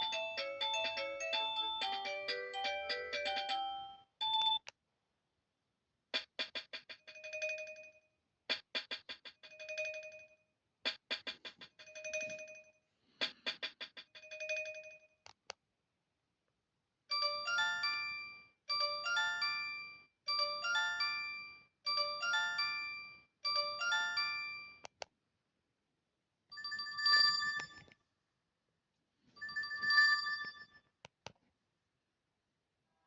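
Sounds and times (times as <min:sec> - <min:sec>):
phone ringtone: 0:00.0 - 0:04.6, 0:11.8 - 0:12.8, 0:14.2 - 0:15.2, 0:17.1 - 0:24.8, 0:26.6 - 0:27.9, 0:29.4 - 0:30.9
click: 0:24.8 - 0:25.1.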